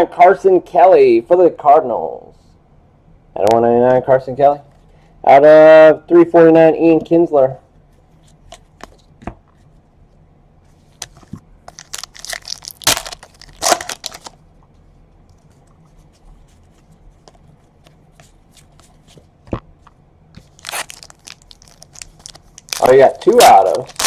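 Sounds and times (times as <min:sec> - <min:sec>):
foil wrapper tearing and crinkling: 0:11.7 - 0:14.4, 0:20.4 - 0:24.0
cards being handled: 0:15.3 - 0:19.3, 0:20.4 - 0:24.0.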